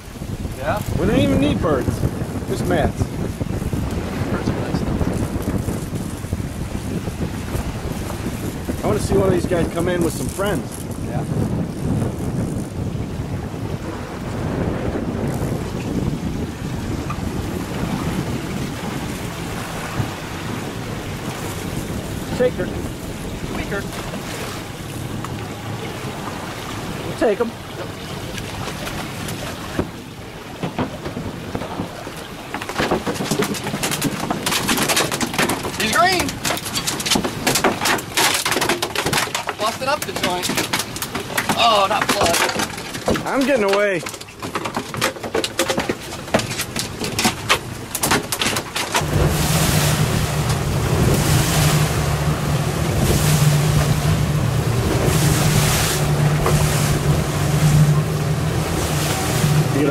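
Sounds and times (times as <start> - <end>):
boat motor running: 0.0 - 59.9
water splashing: 0.0 - 59.9
wind noise: 0.0 - 59.9
fish splashing and slapping: 23.2 - 59.9
sharp clicks and knocks: 32.5 - 49.1.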